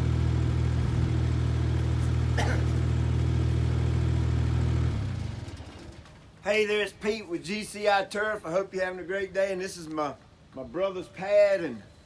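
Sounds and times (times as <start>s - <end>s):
lawn equipment engine running: 0.0s - 6.2s.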